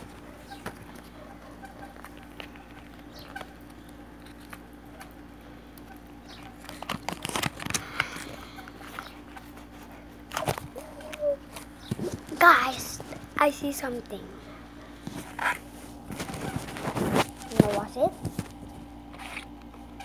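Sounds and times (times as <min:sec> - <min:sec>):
packaging crinkling and scraping: 0:00.0 - 0:13.4, 0:15.0 - 0:20.0
packaging taps and rustles: 0:06.3 - 0:09.6, 0:15.1 - 0:19.4.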